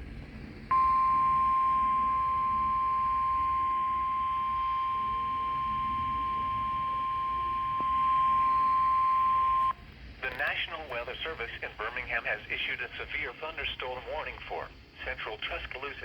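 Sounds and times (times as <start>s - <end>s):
steady high alert beep: 0.7s - 9.7s.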